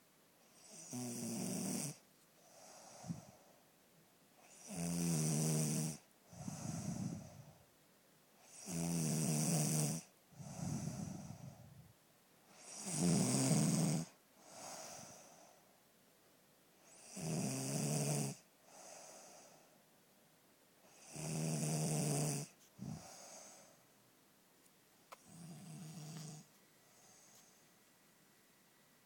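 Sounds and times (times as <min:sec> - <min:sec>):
woman snoring: 0:00.5 - 0:02.0, 0:04.4 - 0:07.6, 0:08.4 - 0:11.6, 0:12.5 - 0:15.5, 0:16.9 - 0:19.6, 0:20.9 - 0:23.8, 0:25.2 - 0:26.5
soft breath: 0:02.3 - 0:03.8, 0:06.2 - 0:07.7, 0:10.3 - 0:12.9, 0:14.4 - 0:15.9, 0:18.6 - 0:19.9, 0:22.5 - 0:24.0, 0:25.1 - 0:27.9.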